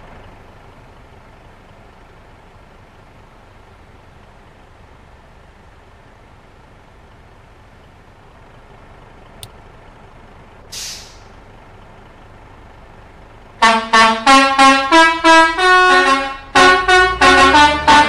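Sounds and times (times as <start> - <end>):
short hiss: 10.7 - 11.3
bus air horn melody: 13.6 - 18.0.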